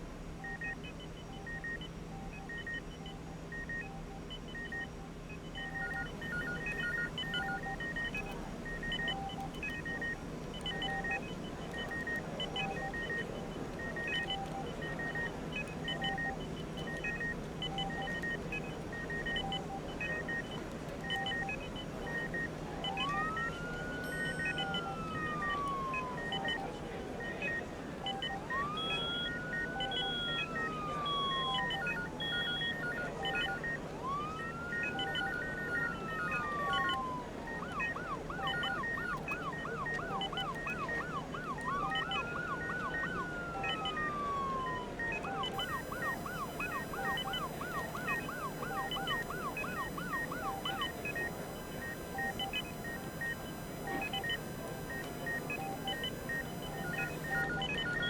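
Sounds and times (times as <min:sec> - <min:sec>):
medical equipment beeping: 0:05.6 - 0:58.0
siren wailing: 0:22.2 - 0:58.0.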